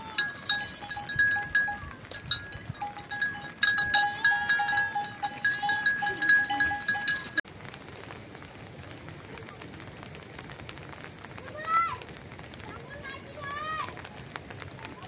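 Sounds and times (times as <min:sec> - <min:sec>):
goat bells clanking: 0:00.0 - 0:07.4.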